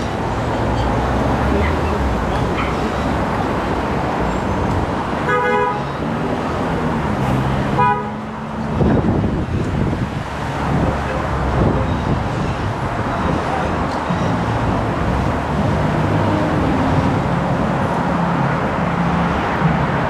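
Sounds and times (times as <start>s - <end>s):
street traffic: 0.0s - 20.0s
vehicle horn honking: 5.2s - 6.0s, 7.7s - 8.2s
wind on microphone: 6.0s - 20.0s.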